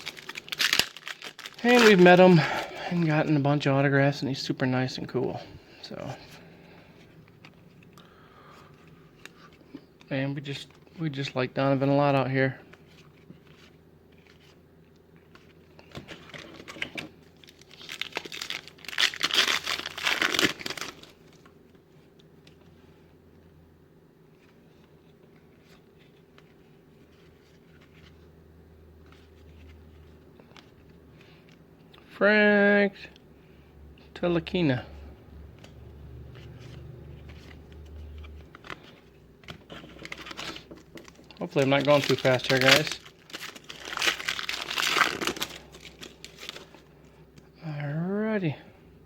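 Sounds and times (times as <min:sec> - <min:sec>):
cards clicking and rustling: 0:00.0 - 0:02.4, 0:35.5 - 0:47.4
plastic wrapper tearing and crinkling: 0:00.0 - 0:03.3, 0:15.4 - 0:21.5, 0:36.6 - 0:46.9.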